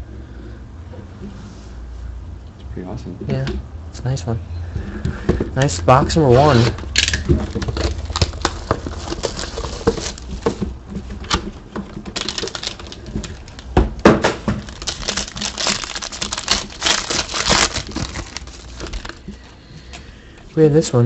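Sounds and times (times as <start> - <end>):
plastic wrapping crinkling and tearing: 6.3 - 10.7, 11.3 - 19.6
cardboard being handled: 7.4 - 13.7, 14.4 - 19.5.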